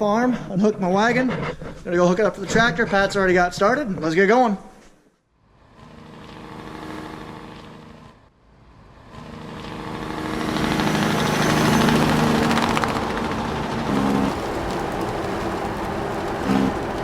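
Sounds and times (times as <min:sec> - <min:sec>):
farm machine engine running: 0:05.7 - 0:08.2, 0:09.0 - 0:17.0.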